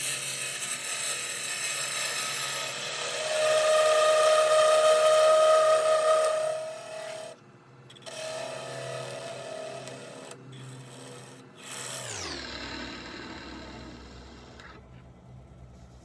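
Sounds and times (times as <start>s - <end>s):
tool cutting spinning wood: 0.0s - 7.3s, 8.0s - 16.0s
wood lathe motor whine: 0.0s - 16.0s.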